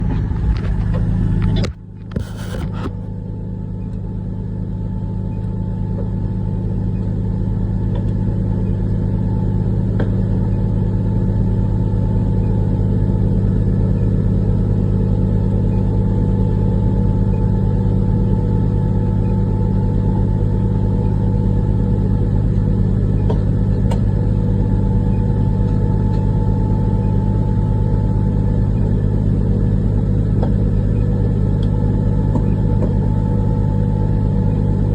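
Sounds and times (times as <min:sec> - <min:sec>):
diesel engine droning: 0:00.0 - 0:34.9.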